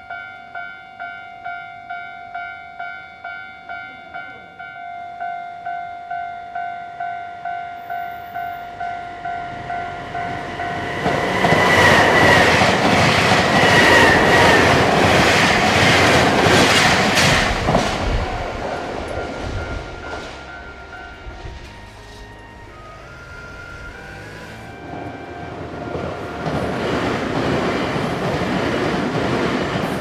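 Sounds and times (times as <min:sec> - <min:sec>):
level crossing warning bell: 0:00.0 - 0:16.6, 0:18.4 - 0:28.4
train wheels clattering over rail joints: 0:10.8 - 0:20.5.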